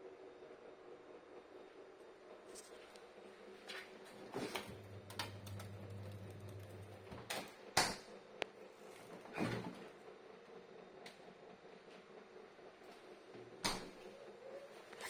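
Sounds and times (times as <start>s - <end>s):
refrigerator steady hum: 2.6s - 7.9s.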